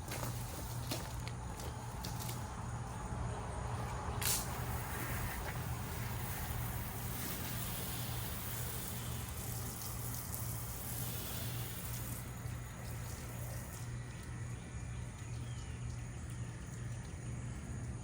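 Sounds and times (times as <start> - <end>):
pump hum: 0.0 - 18.0
hiss of water spray: 4.2 - 14.0.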